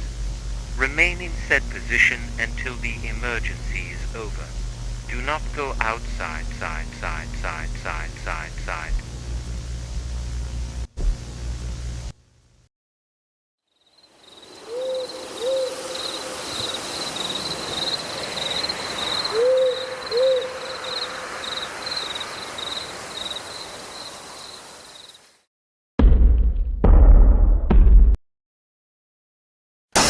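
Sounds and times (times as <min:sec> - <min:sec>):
pulsing insect trill: 0:00.0 - 0:09.6, 0:13.8 - 0:20.1, 0:20.7 - 0:25.3
soft hiss: 0:00.0 - 0:12.2
owl hooting: 0:14.6 - 0:16.4, 0:19.0 - 0:21.2.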